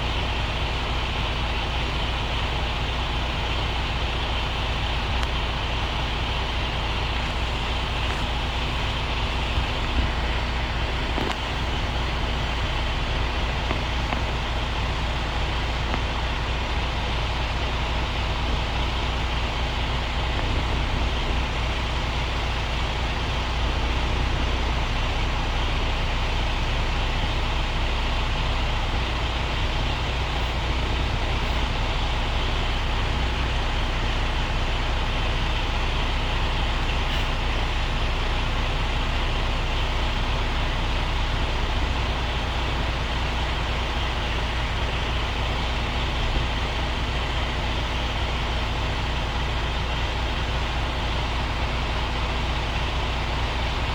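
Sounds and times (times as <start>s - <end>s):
diesel truck engine running: 0.0s - 53.9s.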